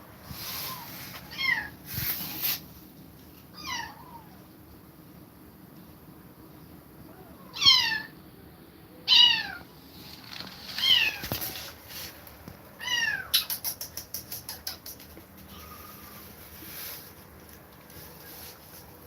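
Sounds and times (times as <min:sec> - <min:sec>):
kitten meowing: 0:07.5 - 0:08.1, 0:09.1 - 0:09.6, 0:12.8 - 0:13.5.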